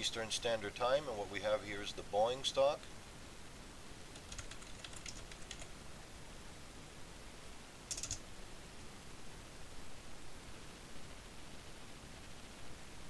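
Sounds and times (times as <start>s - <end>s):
faint hiss: 0.0s - 13.0s
computer keyboard typing: 4.1s - 5.7s, 7.9s - 8.2s.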